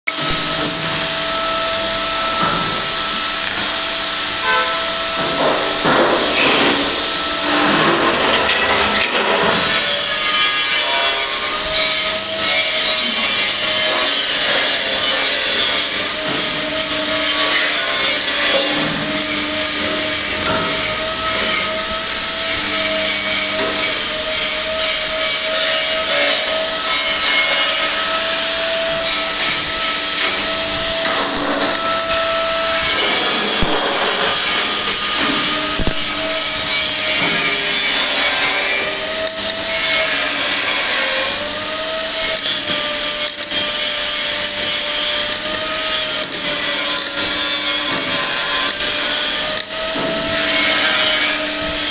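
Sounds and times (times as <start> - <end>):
power tool whining on metal: 0.1 - 51.9
rasping scrape: 0.1 - 51.9.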